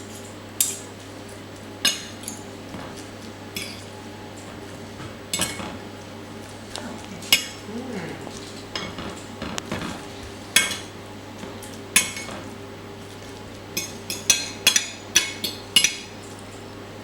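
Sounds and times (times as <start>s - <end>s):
steady low hum: 0.0s - 17.0s
cutlery and dishes clinking: 5.4s - 5.8s, 8.3s - 10.9s.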